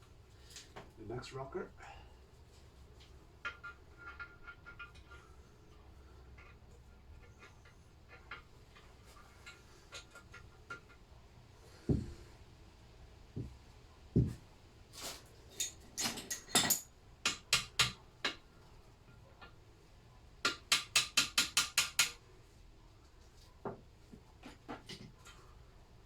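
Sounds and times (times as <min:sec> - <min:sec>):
metal parts and tools clinking: 0:15.5 - 0:16.9.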